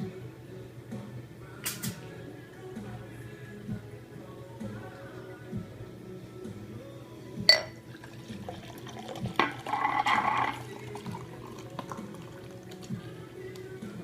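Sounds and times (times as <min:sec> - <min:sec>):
liquid fizzing: 0:07.8 - 0:13.1.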